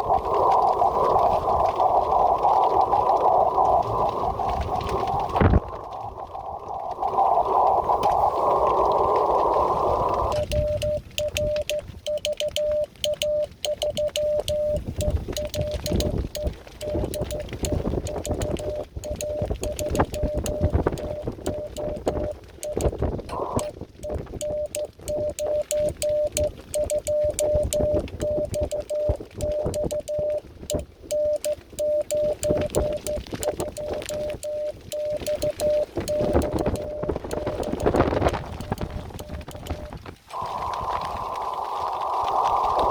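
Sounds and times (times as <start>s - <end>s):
radio receiver hiss: 0.0s - 12.7s, 13.9s - 26.4s, 27.1s - 42.9s
sharp clicks: 0.1s - 42.9s
morse code tone: 10.3s - 40.0s.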